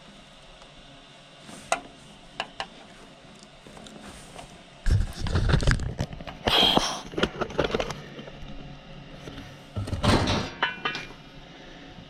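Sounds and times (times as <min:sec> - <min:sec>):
rustling and scraping: 0:01.4 - 0:06.4.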